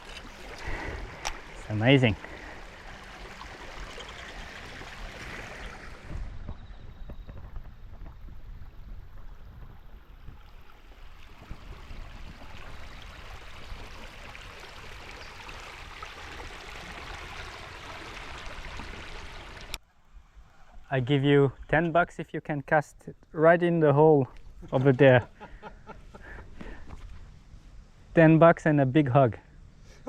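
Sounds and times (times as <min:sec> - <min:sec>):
creek water running: 0:00.0 - 0:19.8.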